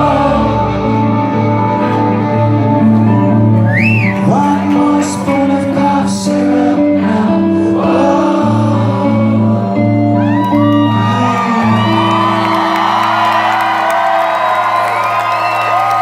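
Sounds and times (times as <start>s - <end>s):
live rock band playing: 0.0s - 14.8s
singing: 4.1s - 13.1s
crowd shouting and whooping: 9.7s - 16.0s.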